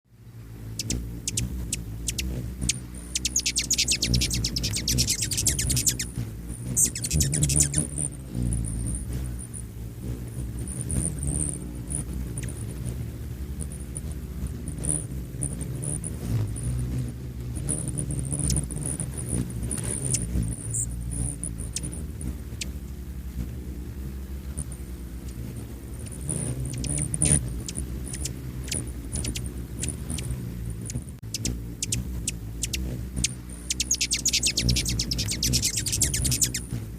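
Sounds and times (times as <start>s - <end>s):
hummingbird wings humming: 0.1s - 36.9s
high chip calls: 0.8s - 6.1s, 6.7s - 8.0s, 20.0s - 20.9s, 26.7s - 30.3s, 30.9s - 36.7s
high-pitched bird chirps: 0.8s - 6.1s, 6.8s - 8.0s, 20.0s - 20.9s, 26.7s - 29.4s, 30.9s - 32.0s, 32.6s - 36.7s
thin high squeaks: 0.8s - 9.7s, 17.6s - 23.0s, 24.5s - 36.8s.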